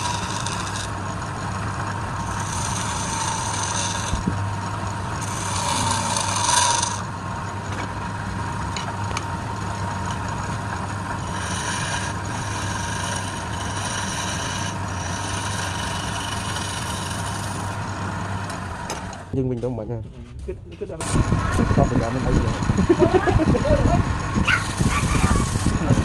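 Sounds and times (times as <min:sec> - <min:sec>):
turning tool scraping wood: 0:00.0 - 0:07.8, 0:08.8 - 0:19.3, 0:24.1 - 0:26.0
wood lathe humming: 0:00.0 - 0:19.4, 0:21.2 - 0:26.0.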